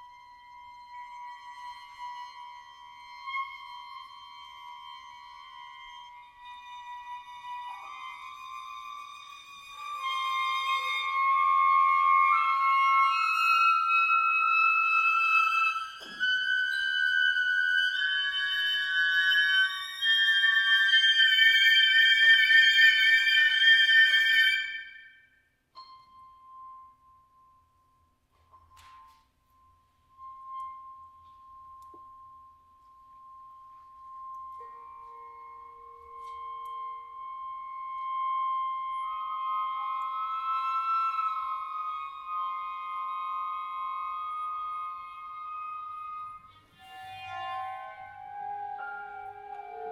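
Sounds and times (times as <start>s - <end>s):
chamber ensemble held notes: 33.8s - 49.9s.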